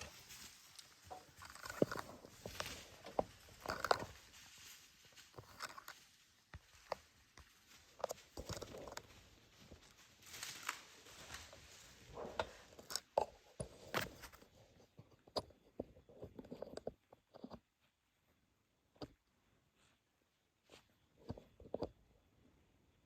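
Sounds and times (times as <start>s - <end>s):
crunching and rustling: 0.0s - 17.9s.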